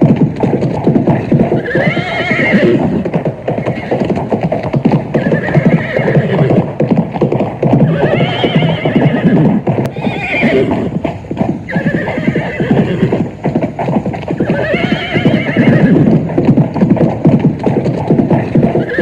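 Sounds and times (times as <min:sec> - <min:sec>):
horse hooves galloping: 0:00.0 - 0:19.0
horse neighing: 0:01.5 - 0:04.2, 0:05.2 - 0:06.6, 0:07.8 - 0:11.0, 0:11.7 - 0:13.4, 0:14.3 - 0:16.3, 0:18.3 - 0:19.0.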